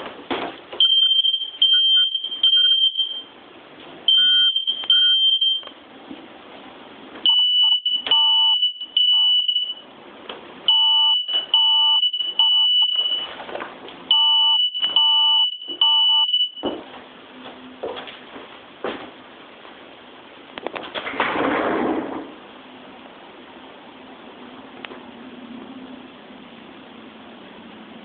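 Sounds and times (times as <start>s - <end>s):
smoke alarm beeping: 0.8s - 3.4s, 4.1s - 5.7s, 7.2s - 9.8s, 10.7s - 13.3s, 14.1s - 16.8s.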